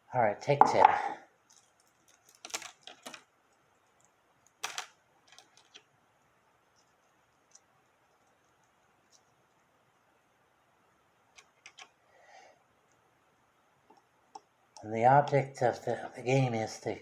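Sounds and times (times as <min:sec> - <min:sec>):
plastic pieces clicking and clacking: 0:01.5 - 0:03.3, 0:04.0 - 0:05.9, 0:11.3 - 0:11.9.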